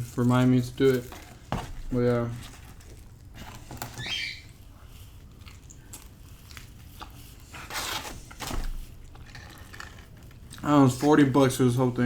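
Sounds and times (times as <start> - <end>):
person chewing pizza: 4.5 - 11.2.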